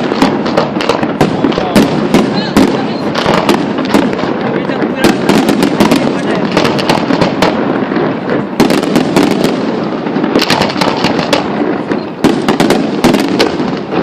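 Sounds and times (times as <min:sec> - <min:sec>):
fireworks banging and crackling: 0:00.0 - 0:14.0.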